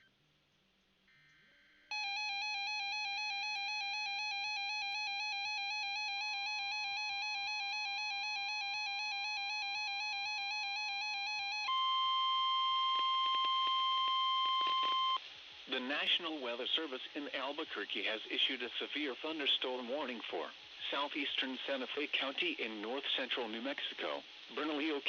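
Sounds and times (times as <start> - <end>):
steady alarm tone: 1.9 - 15.2.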